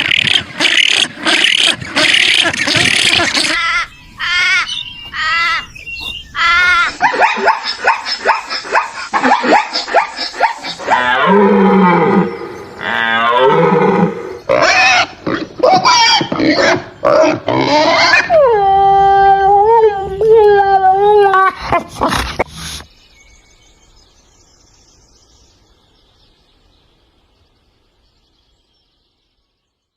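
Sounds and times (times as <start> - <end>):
animal calls: 0.0 - 22.9.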